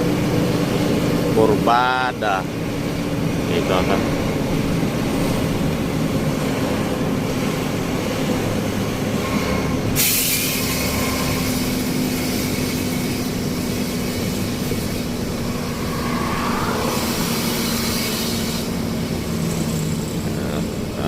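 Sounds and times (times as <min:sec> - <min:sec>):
truck diesel engine running: 0:00.0 - 0:21.0
short air hiss: 0:10.0 - 0:12.8.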